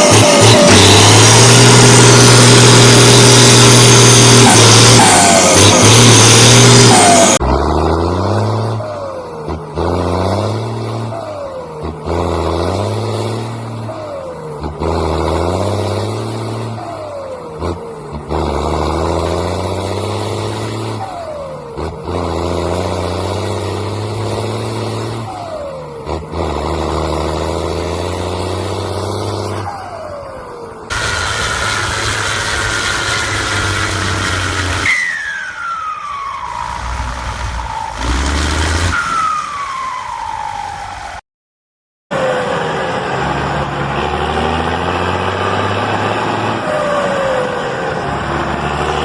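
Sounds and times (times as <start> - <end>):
diesel engine under load: 0.0 - 41.1, 42.1 - 49.0
turbo falling whistle: 34.8 - 40.8.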